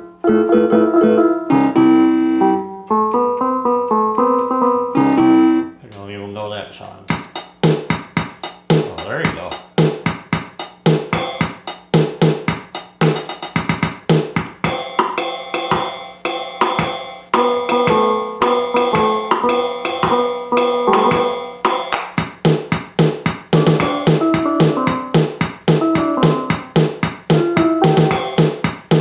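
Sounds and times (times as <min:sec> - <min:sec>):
drum machine beat: 0:07.1 - 0:29.0.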